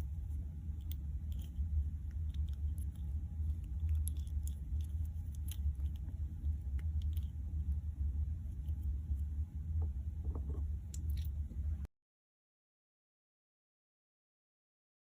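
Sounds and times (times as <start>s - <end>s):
low rumble: 0.0s - 11.9s.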